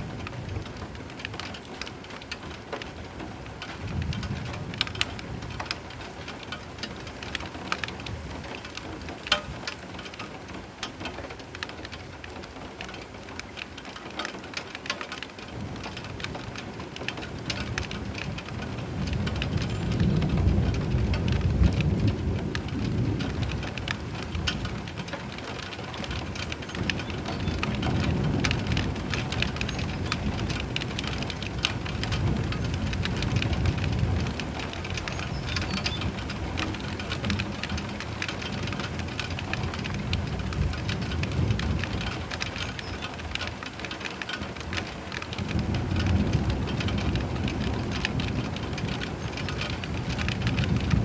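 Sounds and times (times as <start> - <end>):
rain drops pattering: 0.0 - 51.0
low thunder rumble: 3.8 - 6.1, 15.6 - 43.7, 44.4 - 51.0.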